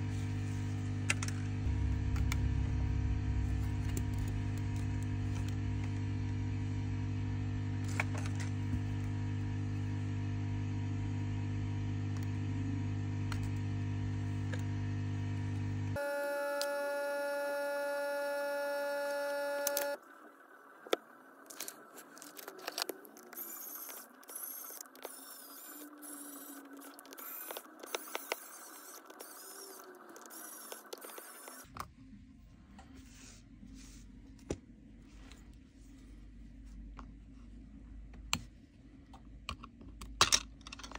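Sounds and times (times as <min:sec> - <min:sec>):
low hum: 0:00.0 - 0:09.7
loud held tone: 0:01.7 - 0:05.6, 0:16.0 - 0:20.0.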